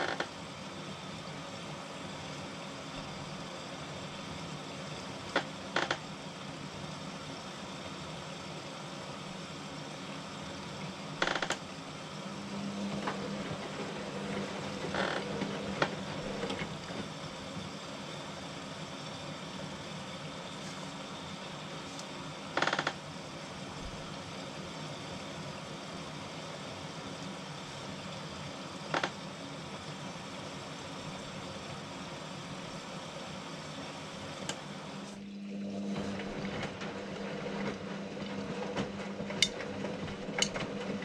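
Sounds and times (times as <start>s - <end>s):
washing machine drum hum: 0.0s - 41.0s
load and water tumbling: 8.9s - 30.1s.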